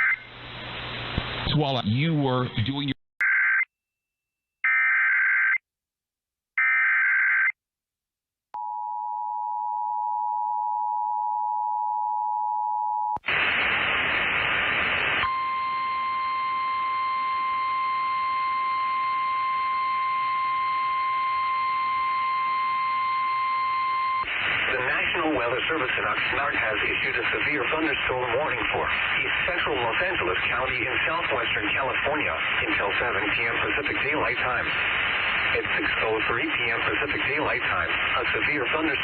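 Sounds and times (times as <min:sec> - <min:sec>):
static: 0:00.0 - 0:03.0, 0:13.2 - 0:16.0, 0:24.2 - 0:39.0
single-pitch warning alarm tone: 0:15.3 - 0:24.3.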